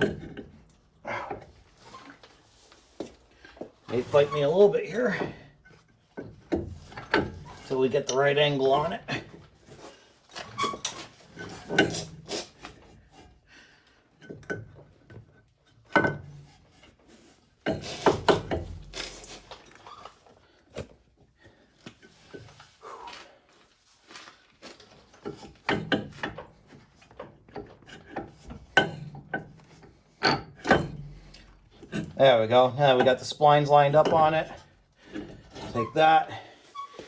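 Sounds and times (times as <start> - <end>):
metal clunks scrapes and clinks: 9.6 - 13.3, 25.1 - 32.2.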